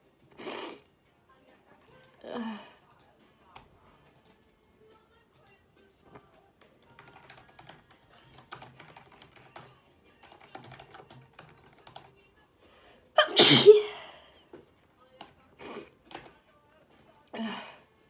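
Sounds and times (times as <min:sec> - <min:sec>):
typing on computer keyboard: 0:06.6 - 0:12.2, 0:16.1 - 0:16.3
loud sneeze: 0:13.2 - 0:14.2.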